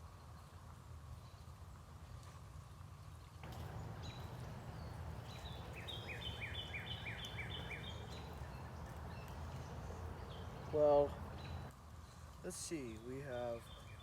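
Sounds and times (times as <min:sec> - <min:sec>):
songbird singing: 0:03.4 - 0:14.0.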